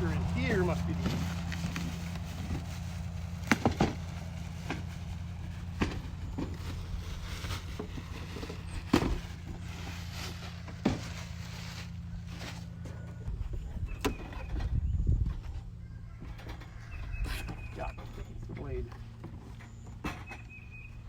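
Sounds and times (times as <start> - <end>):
boxed parts knocking and clunking: 3.5 - 4.0.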